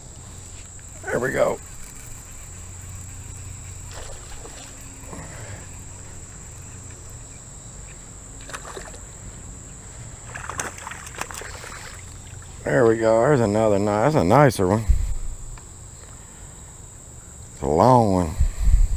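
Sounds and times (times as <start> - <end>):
high insect drone: 0.0 - 18.9
fish splashing: 3.8 - 4.8, 8.4 - 9.0, 10.3 - 12.4.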